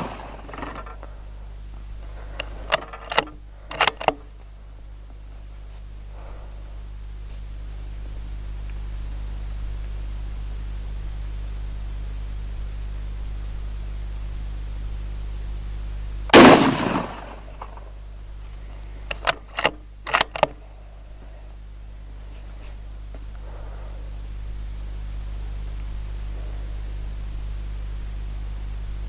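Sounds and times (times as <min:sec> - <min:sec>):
rifle bolt metallic clicks: 0:00.0 - 0:01.0, 0:02.3 - 0:04.2, 0:16.4 - 0:17.8, 0:19.1 - 0:20.6
rifle shot with echo: 0:00.0 - 0:01.0, 0:16.3 - 0:18.0
low hum: 0:00.0 - 0:29.0.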